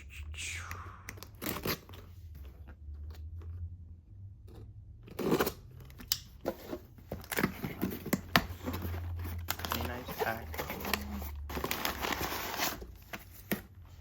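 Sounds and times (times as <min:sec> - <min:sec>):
packaging rustling: 0:06.5 - 0:13.8.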